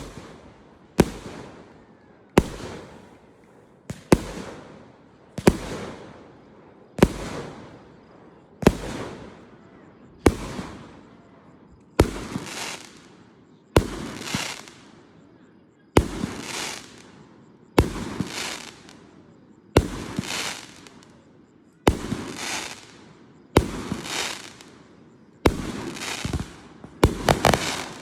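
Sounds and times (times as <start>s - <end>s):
fireworks bursting: 0.0s - 1.8s, 2.4s - 6.2s, 6.9s - 9.4s, 10.2s - 11.1s, 12.0s - 13.2s, 13.8s - 15.0s, 16.0s - 17.2s, 17.8s - 19.1s, 19.7s - 21.2s, 21.9s - 28.0s.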